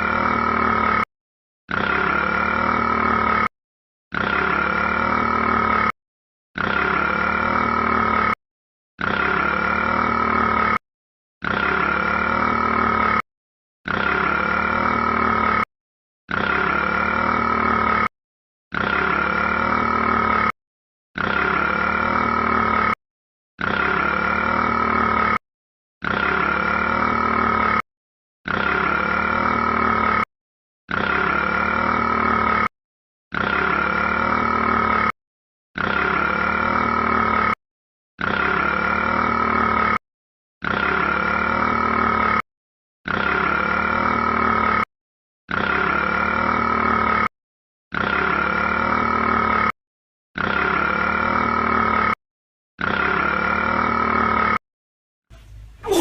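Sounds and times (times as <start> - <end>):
rat burping: 1.7 - 3.5, 4.1 - 6.0, 6.6 - 8.4, 9.0 - 10.8, 11.4 - 13.2, 13.9 - 15.7, 16.3 - 18.1, 18.7 - 20.6, 21.2 - 23.0, 23.6 - 25.4, 30.9 - 32.7, 33.4 - 35.2, 35.8 - 37.6, 48.0 - 49.6, 55.3 - 56.0.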